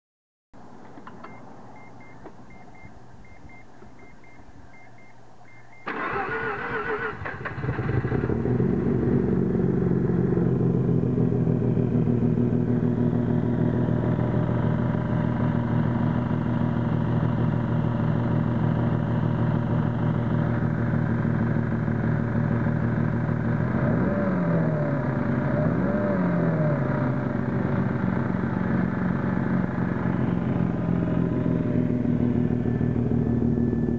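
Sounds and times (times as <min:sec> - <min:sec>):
starter cranking engine: 0:05.8 - 0:08.7
engine revving: 0:05.9 - 0:17.1, 0:19.0 - 0:33.9
rotary engine idling rough: 0:05.9 - 0:33.9.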